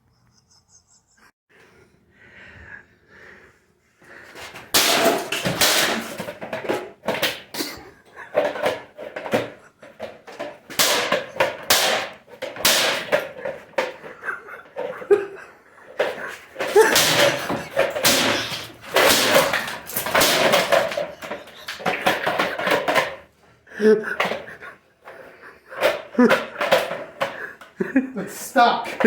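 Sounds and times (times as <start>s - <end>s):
vacuum cleaner banging and clattering: 4.3s - 23.3s, 24.0s - 29.0s.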